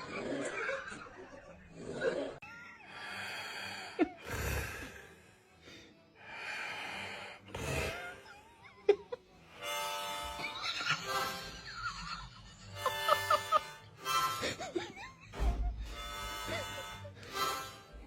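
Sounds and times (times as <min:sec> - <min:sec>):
wheezing snoring: 0:03.0 - 0:05.6, 0:06.2 - 0:08.4.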